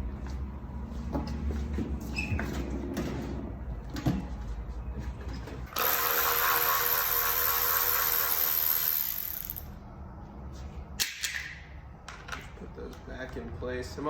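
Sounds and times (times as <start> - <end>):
cordless ratchet whirring: 5.7 - 9.8.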